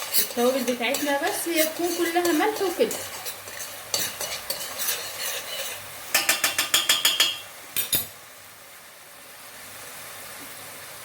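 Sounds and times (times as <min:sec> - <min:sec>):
metal spoon scraping pot: 0:00.0 - 0:07.4
onions sizzling in oil: 0:00.0 - 0:11.0.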